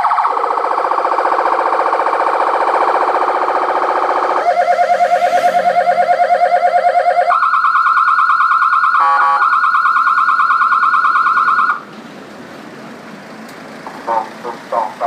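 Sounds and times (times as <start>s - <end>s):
electronic emergency siren: 0.0s - 11.8s.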